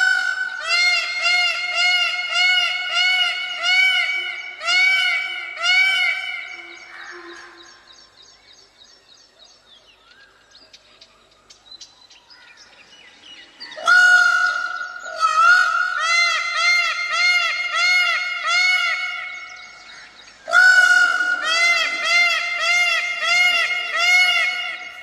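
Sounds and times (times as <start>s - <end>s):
peafowl calling: 0.0s - 7.9s, 13.6s - 25.0s
faint chirps and clicks: 6.8s - 8.6s.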